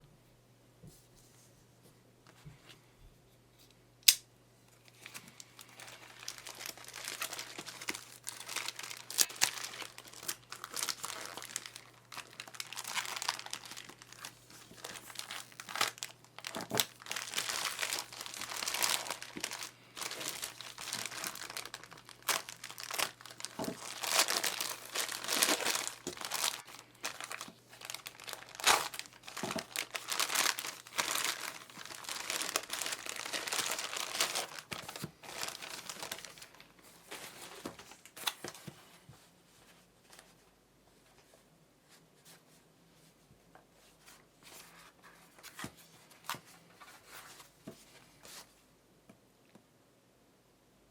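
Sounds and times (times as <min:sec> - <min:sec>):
packaging crinkling and tearing: 0:04.8 - 0:38.7.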